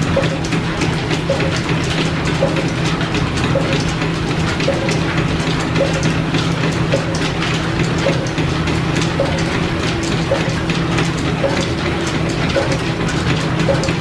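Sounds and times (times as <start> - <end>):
line-shaft machinery humming: 0.0 - 14.0
regular clicking: 0.0 - 14.0.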